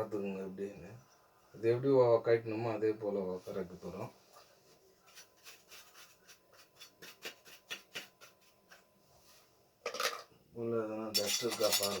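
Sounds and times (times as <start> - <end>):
burner parts scratching and clicking: 11.2 - 12.0.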